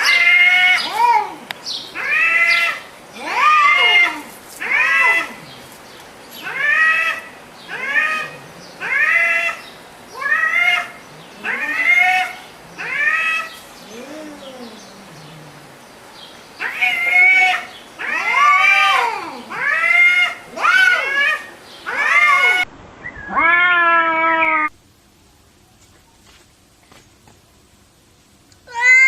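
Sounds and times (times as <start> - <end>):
cat meowing: 10.2 - 15.0, 28.7 - 29.0.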